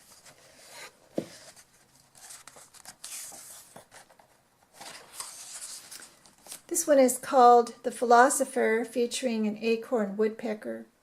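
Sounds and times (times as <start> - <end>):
paper rustling and sliding: 0.0 - 6.7.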